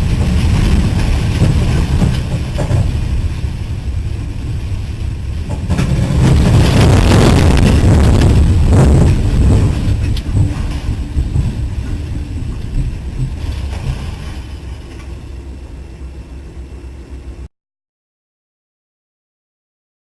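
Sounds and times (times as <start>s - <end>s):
storm wind buffeting microphone: 0.0s - 17.4s.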